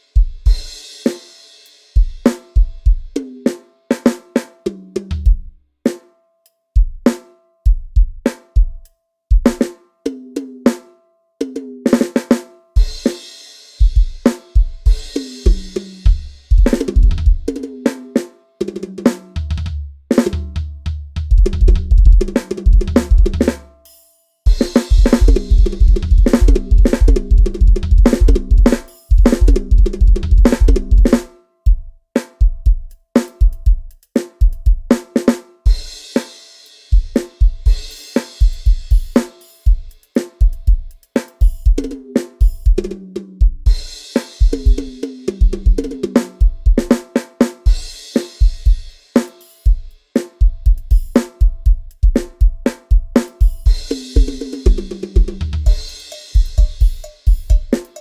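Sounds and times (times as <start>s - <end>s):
drum kit playing: 0.0s - 6.1s, 6.8s - 58.0s
fast kick drum runs: 13.8s - 17.5s, 21.3s - 23.5s, 24.5s - 34.9s, 37.0s - 43.8s, 44.4s - 47.0s, 47.8s - 48.9s, 49.7s - 57.8s.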